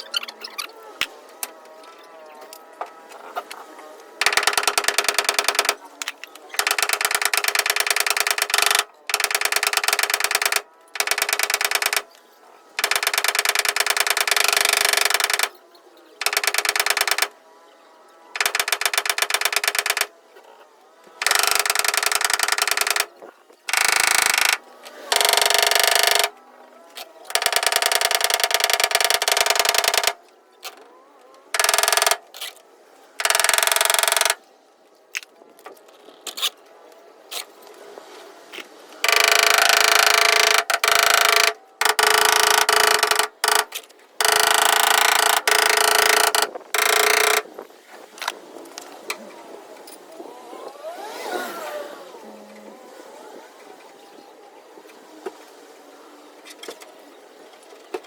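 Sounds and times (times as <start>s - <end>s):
power tool clattering: 23.7s - 26.3s, 39.0s - 47.4s.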